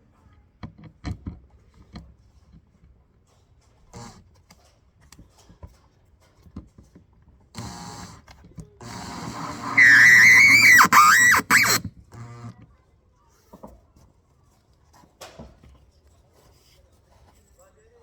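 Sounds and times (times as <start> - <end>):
power drill whining: 8.8 - 12.5.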